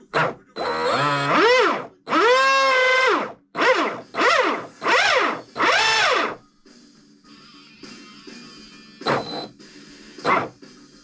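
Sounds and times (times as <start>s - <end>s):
electric motor whining: 0.0s - 6.4s, 9.0s - 9.5s, 10.2s - 10.5s.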